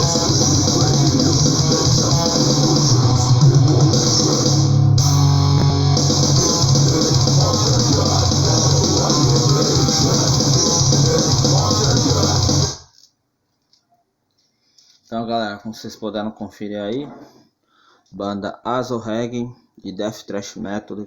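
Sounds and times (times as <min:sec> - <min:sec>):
bass guitar: 0:00.0 - 0:12.8
distorted electric guitars: 0:00.0 - 0:12.9.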